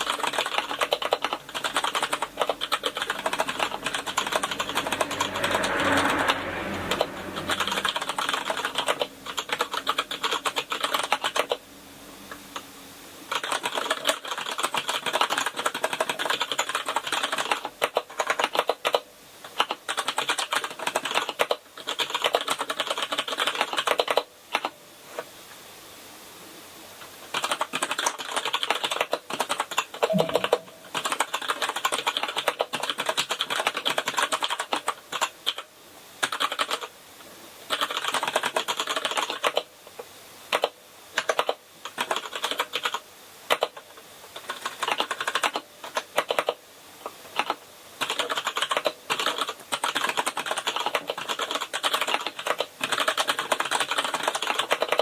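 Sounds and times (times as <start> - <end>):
keyboard typing clicks: 0.0 - 5.3, 7.4 - 11.6, 27.4 - 35.6.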